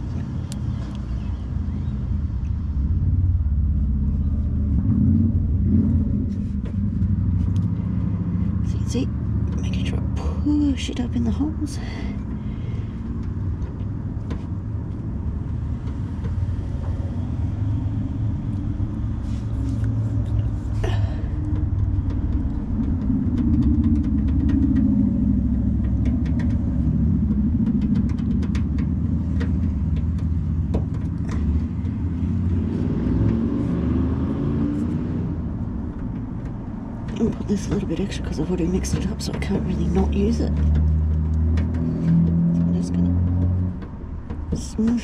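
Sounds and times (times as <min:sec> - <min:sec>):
steady low rumble: 0:00.0 - 0:45.0
faint clicks and taps: 0:21.4 - 0:32.6, 0:34.4 - 0:45.0.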